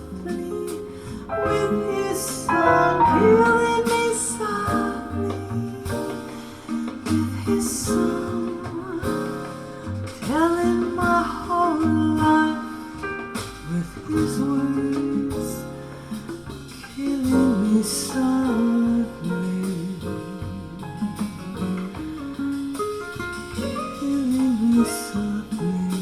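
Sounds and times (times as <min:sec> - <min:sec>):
acoustic guitar music: 0:00.0 - 0:11.0, 0:20.7 - 0:26.0.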